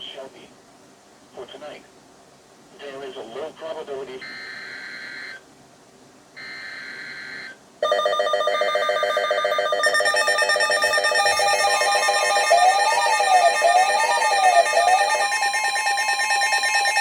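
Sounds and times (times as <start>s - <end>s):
loud steady alert tone: 7.8s - 17.0s
rising and falling tone: 9.9s - 16.7s.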